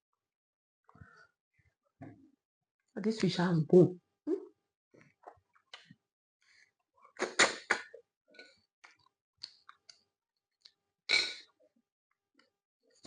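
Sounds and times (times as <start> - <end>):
chewing and lip smacks: 8.8 - 10.0.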